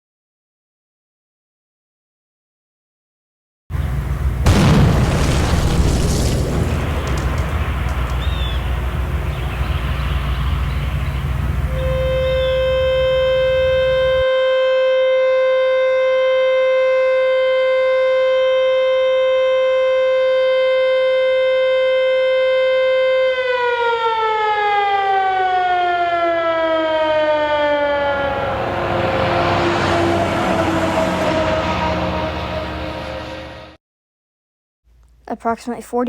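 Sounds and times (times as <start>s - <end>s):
warning siren winding down: 11.0s - 33.8s.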